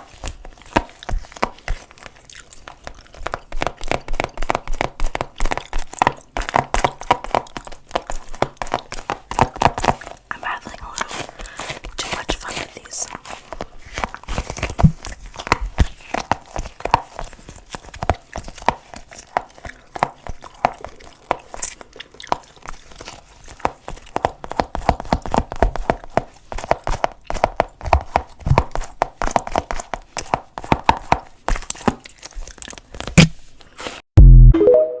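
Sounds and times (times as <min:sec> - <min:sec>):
sticky wet clicks and crackles: 0:00.1 - 0:33.9.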